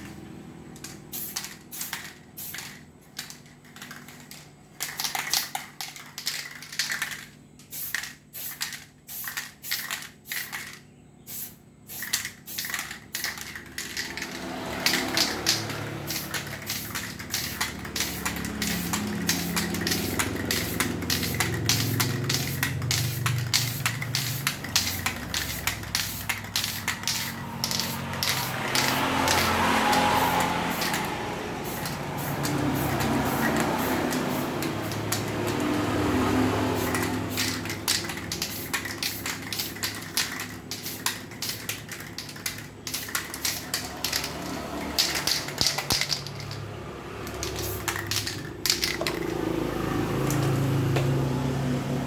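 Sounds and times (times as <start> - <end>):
spray can hissing bursts: 0.8 - 49.3.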